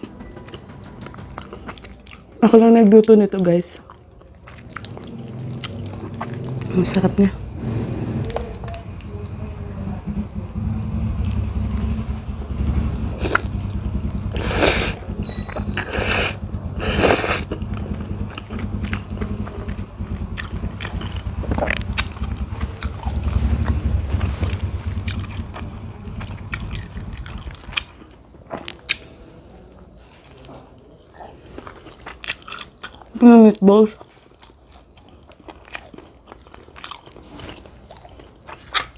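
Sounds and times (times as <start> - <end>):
close chewing: 0.4 - 7.6, 13.0 - 38.9
mouth noises: 14.3 - 27.8.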